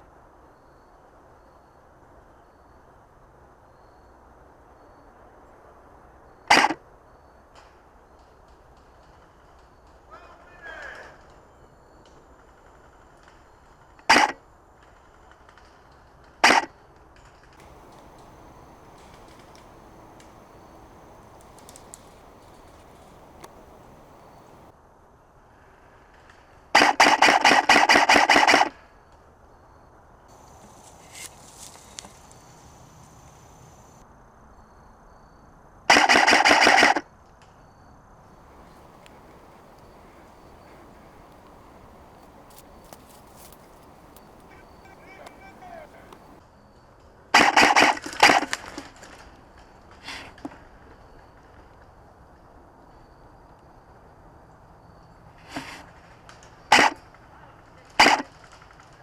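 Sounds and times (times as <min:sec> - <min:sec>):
airsoft rifle shot: 0:38.6 - 0:46.4.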